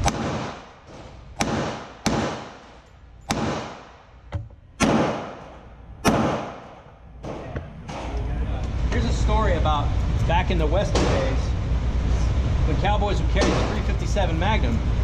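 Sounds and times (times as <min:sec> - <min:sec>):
pistol shots: 0:00.0 - 0:04.1, 0:04.8 - 0:06.9.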